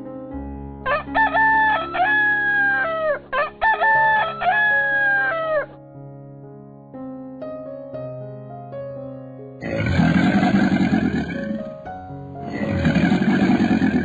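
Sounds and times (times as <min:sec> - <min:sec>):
soft background music: 0:00.0 - 0:14.0
rooster crowing: 0:00.9 - 0:05.7, 0:12.5 - 0:14.0.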